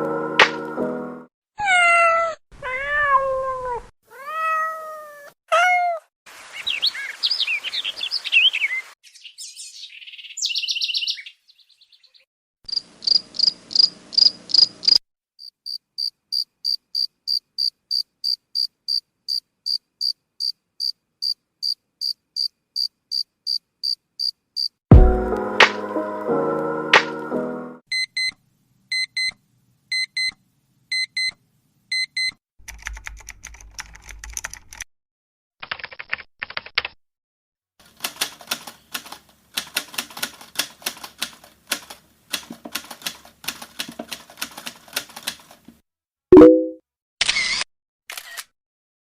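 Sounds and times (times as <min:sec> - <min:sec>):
cat meowing: 0:01.6 - 0:06.1
cricket chirping: 0:12.7 - 0:24.8
short high chirps: 0:46.4 - 0:46.8.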